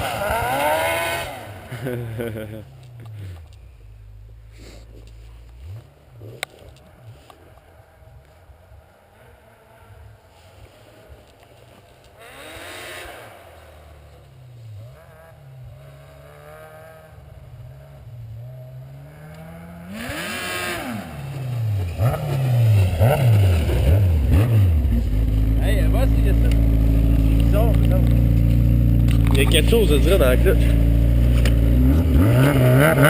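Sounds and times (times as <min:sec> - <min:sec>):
snowmobile engine revving: 0:00.0 - 0:03.4, 0:12.1 - 0:33.0.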